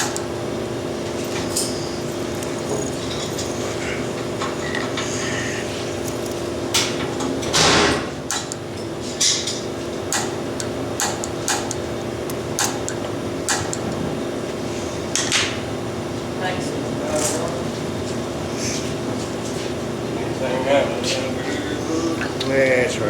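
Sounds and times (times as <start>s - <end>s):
steady background hum: 0.0s - 23.0s
hand tools clicking on metal parts: 1.1s - 5.1s, 6.0s - 7.0s, 9.2s - 13.8s.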